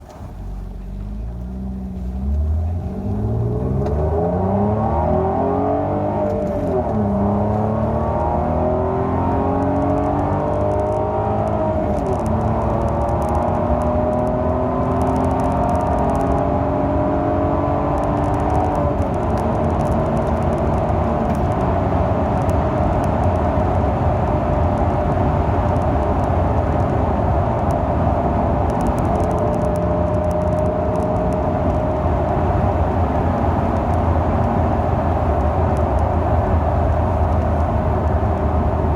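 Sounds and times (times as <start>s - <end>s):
car engine accelerating: 0.0s - 38.9s
microphone clicking: 28.6s - 38.9s.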